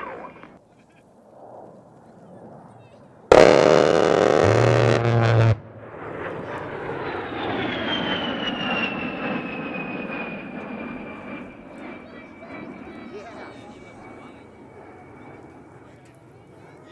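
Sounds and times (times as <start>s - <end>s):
jet engines passing: 1.3s - 16.8s
rotary cannon firing buzz: 3.3s - 6.4s.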